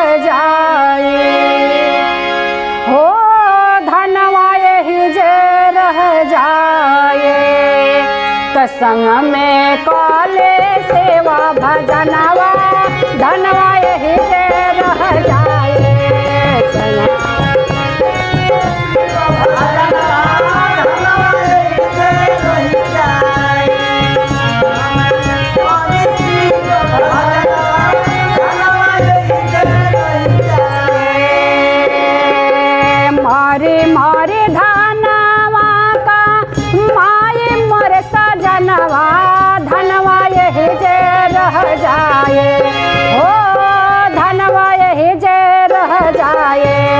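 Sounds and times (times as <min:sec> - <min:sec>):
folk melody: 0:07.3 - 0:35.2
hand drums: 0:10.0 - 0:46.9.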